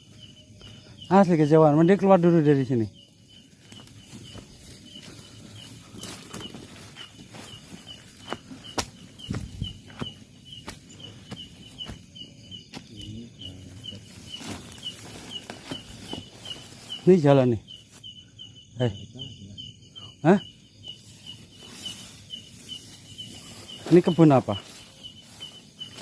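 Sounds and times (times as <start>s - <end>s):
footsteps through undergrowth: 3.2s - 18.1s, 20.9s - 26.0s
twigs snapping: 8.1s - 9.4s.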